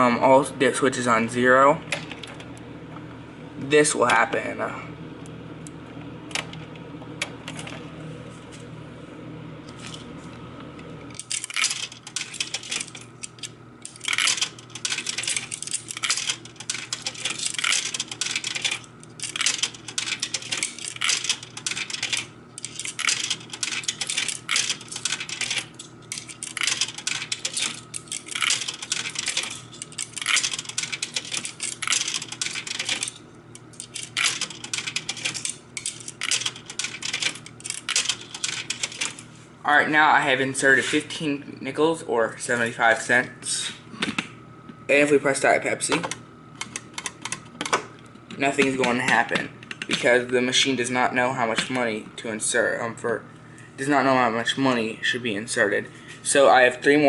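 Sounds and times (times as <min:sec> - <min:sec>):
coins clinking in vending machine: 0:11.1 - 0:39.2.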